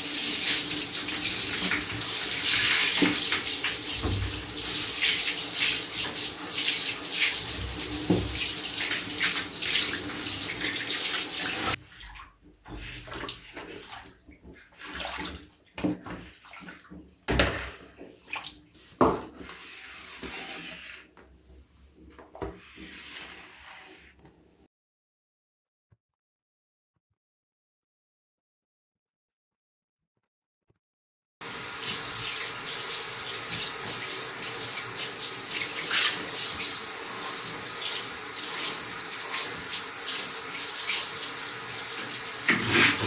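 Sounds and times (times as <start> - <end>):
water running: 0.0 - 20.8, 31.4 - 43.0.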